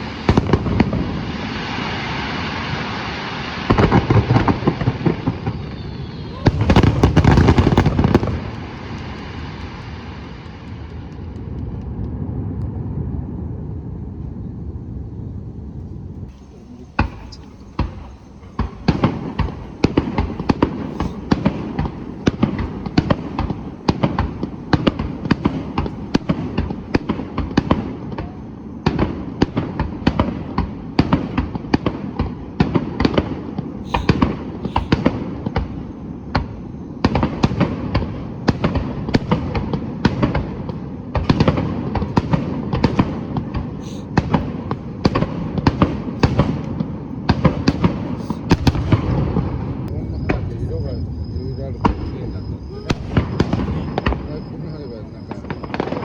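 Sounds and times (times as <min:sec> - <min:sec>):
fireworks bangs and cracks: 0:00.0 - 0:14.4, 0:16.1 - 0:56.0
low rumble: 0:48.8 - 0:54.5.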